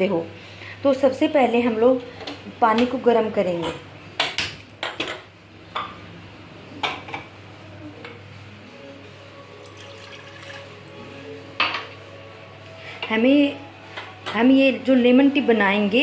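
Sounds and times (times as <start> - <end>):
faint background music: 0.0 - 16.0
water poured into a pan: 9.6 - 10.9.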